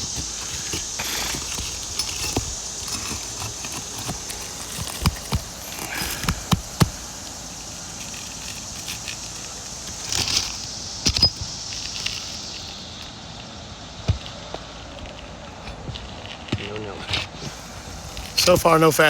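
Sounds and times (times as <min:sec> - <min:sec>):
shingles clicking and knocking: 0:00.0 - 0:13.1
crackling scrape: 0:00.0 - 0:19.0
steady high hiss: 0:00.0 - 0:19.0.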